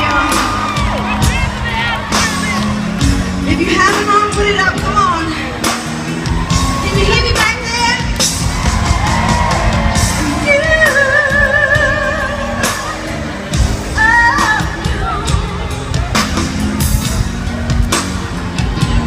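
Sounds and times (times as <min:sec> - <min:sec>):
drum beat: 0:00.0 - 0:19.0
woman singing: 0:10.2 - 0:13.2, 0:13.8 - 0:15.8.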